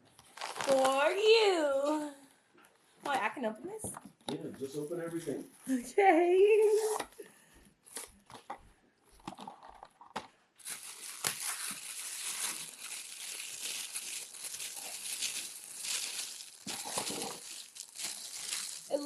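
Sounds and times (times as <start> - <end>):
packaging crinkling and tearing: 0.2 - 1.2, 10.6 - 19.0.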